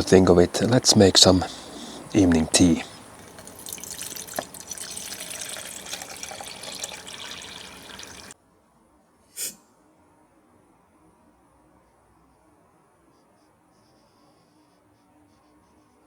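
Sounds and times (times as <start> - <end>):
water pouring into a pot: 3.0 - 8.4.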